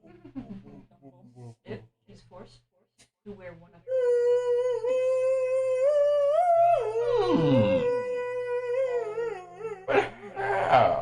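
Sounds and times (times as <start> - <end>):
voice holding long note: 4.6 - 11.0.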